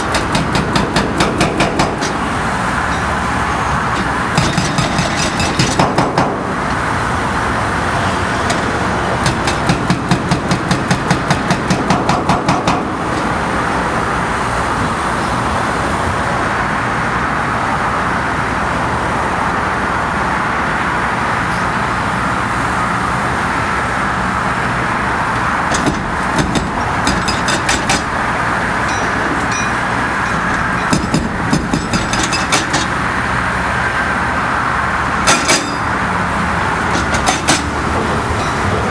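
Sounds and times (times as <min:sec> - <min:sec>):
hydraulic breaker hammer pounding: 0:00.0 - 0:06.6, 0:08.2 - 0:13.4, 0:25.6 - 0:33.4, 0:35.0 - 0:38.9
roar of traffic and machinery: 0:00.0 - 0:38.9.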